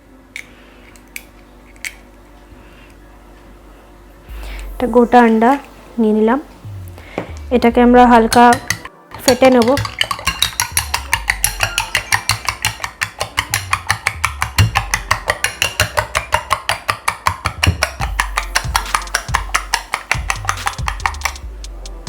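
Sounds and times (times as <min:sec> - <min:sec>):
spoon beating egg in bowl: 0:08.3 - 0:21.5.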